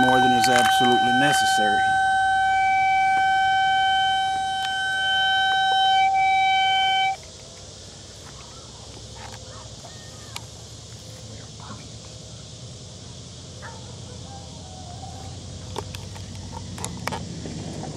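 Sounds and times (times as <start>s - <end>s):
steady electronic tone: 0.0s - 7.2s.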